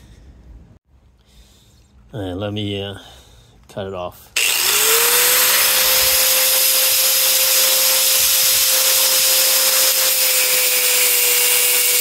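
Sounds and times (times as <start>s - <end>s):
angle grinder cutting metal: 4.4s - 12.0s.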